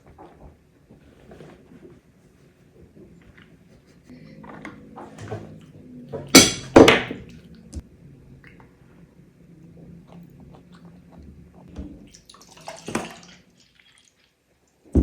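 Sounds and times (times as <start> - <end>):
dishes and cutlery clicking: 6.2 - 7.3.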